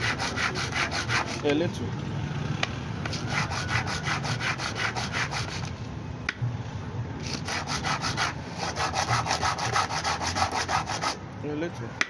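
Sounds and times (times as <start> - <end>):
metal rubbed on sandpaper: 0.0 - 1.5, 3.1 - 5.7, 7.2 - 11.2.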